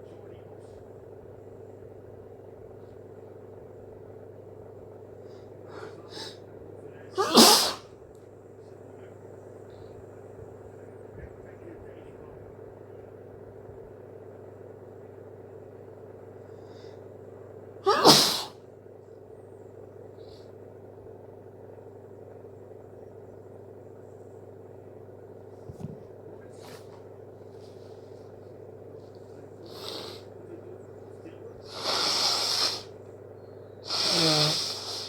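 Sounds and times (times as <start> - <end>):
steady low hum: 0.0 - 35.0
person sneezing: 7.2 - 7.9, 17.8 - 18.6, 29.6 - 30.3
quiet breath: 16.4 - 17.1.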